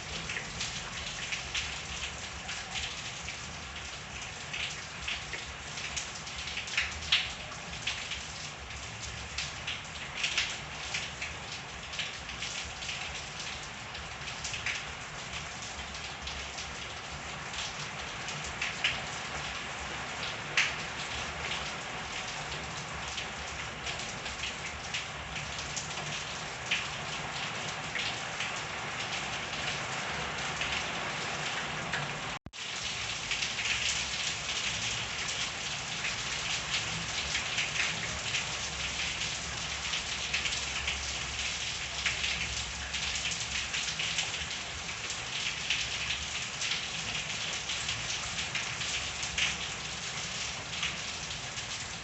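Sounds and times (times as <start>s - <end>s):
rain pattering on surfaces: 0.0s - 52.0s.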